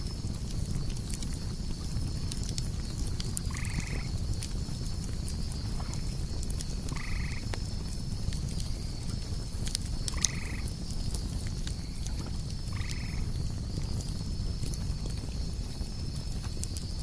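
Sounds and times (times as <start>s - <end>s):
insects chirring: 0.0s - 17.0s
frog calls: 3.5s - 4.1s, 6.9s - 7.4s, 10.1s - 10.7s, 12.7s - 13.3s.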